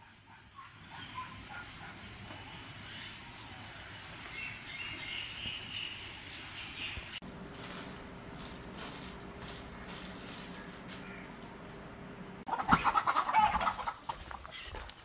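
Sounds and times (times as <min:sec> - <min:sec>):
chickens clucking: 0:12.4 - 0:15.0.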